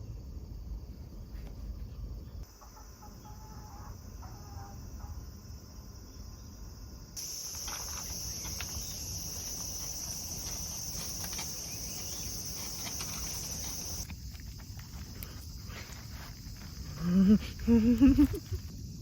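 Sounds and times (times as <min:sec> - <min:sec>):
insects chirping: 0:00.0 - 0:19.0.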